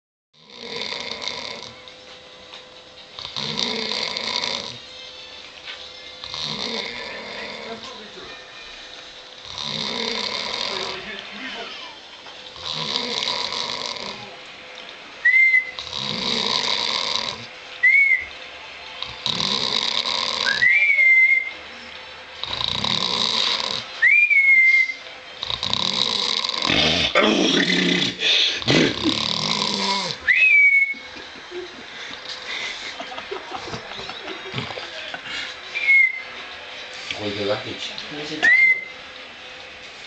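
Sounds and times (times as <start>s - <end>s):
man snoring with whistle: 0.4s - 1.8s, 3.2s - 4.8s, 6.2s - 7.7s, 9.4s - 11.0s, 12.6s - 14.3s, 15.3s - 17.5s, 19.0s - 21.5s, 22.4s - 30.9s.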